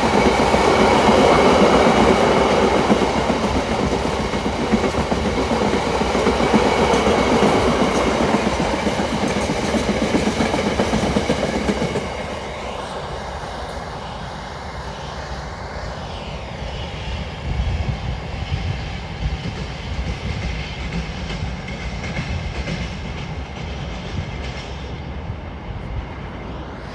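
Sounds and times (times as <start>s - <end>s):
train wheels clattering over rail joints: 0.0s - 12.4s, 19.4s - 24.9s.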